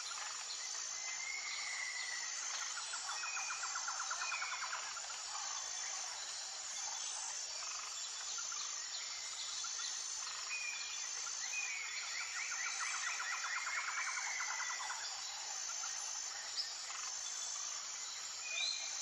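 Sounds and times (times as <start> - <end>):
high insect chorus: 0.0 - 19.0.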